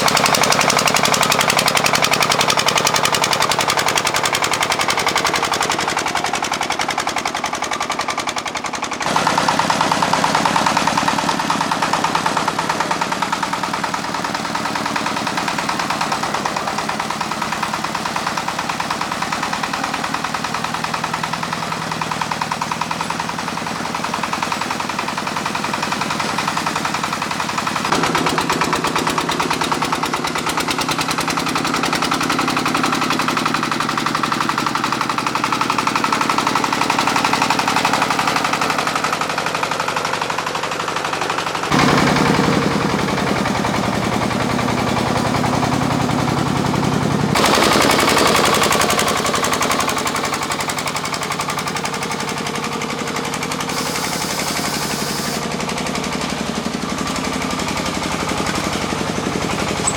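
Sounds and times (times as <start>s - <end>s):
diesel tractor engine chugging: 0.0s - 59.9s.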